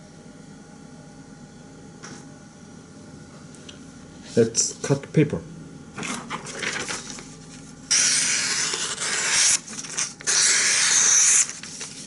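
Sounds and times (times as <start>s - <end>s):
knife slicing through paper: 7.9s - 12.0s.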